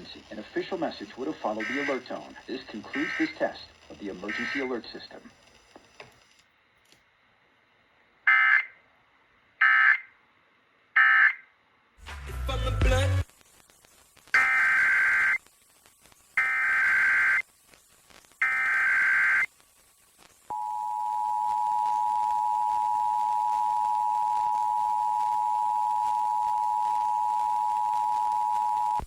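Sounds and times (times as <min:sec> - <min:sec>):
digital data screech bursts: 0:00.0 - 0:05.3, 0:14.4 - 0:15.4, 0:16.4 - 0:17.5, 0:18.4 - 0:19.5.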